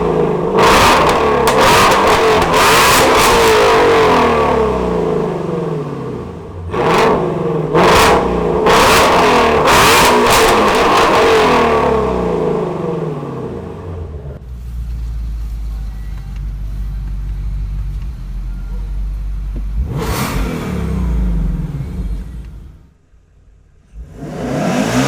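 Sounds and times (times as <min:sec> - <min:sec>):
car engine revving: 0:00.0 - 0:15.8, 0:16.5 - 0:25.0.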